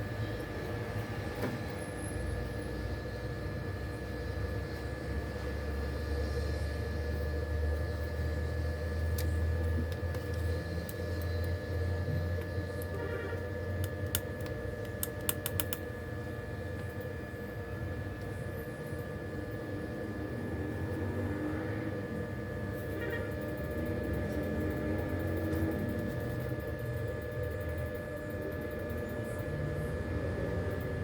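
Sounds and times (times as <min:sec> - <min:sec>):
steady low hum: 0:00.0 - 0:31.0
repair tools clicking and tapping: 0:13.8 - 0:15.8.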